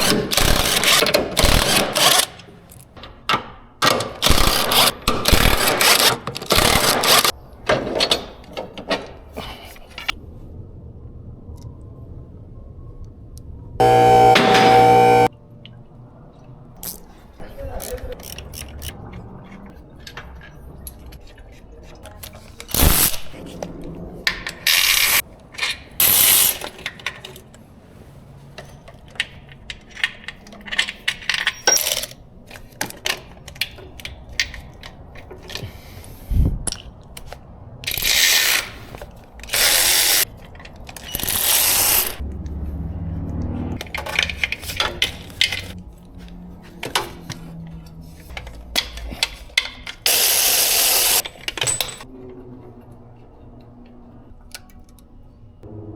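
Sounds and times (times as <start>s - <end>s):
loud bursts of tool noise: 0.0s - 2.3s, 4.2s - 7.3s, 13.8s - 15.3s, 39.5s - 40.2s, 41.1s - 42.2s, 50.1s - 51.2s
metal tools clinking: 4.0s - 10.2s, 28.4s - 36.1s, 46.6s - 52.6s.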